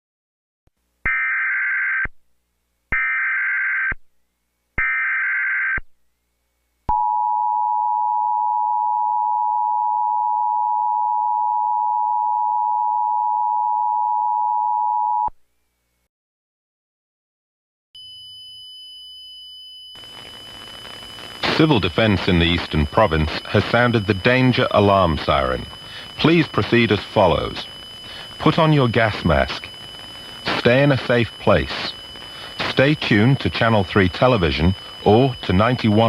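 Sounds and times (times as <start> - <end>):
warbling data bursts: 19.9 - 36.0.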